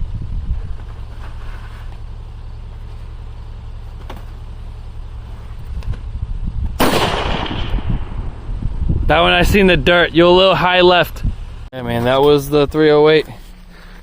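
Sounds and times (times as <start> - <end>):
low steady rumble: 0.0 - 14.0
rifle shot: 6.8 - 8.4.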